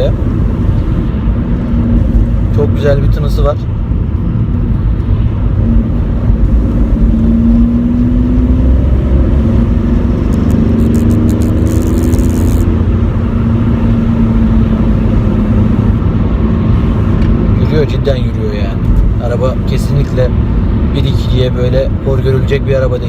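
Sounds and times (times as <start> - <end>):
car engine rumble from inside: 0.0 - 23.0.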